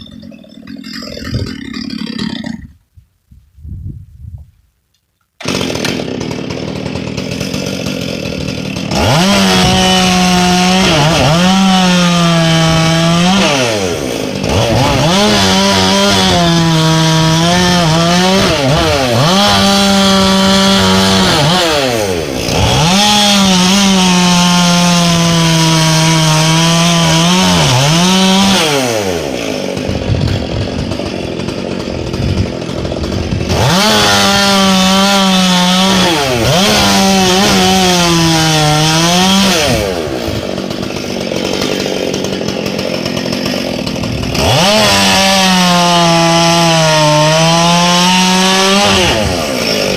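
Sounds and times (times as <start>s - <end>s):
chainsaw cutting wood: 0.0s - 2.9s, 5.0s - 49.9s.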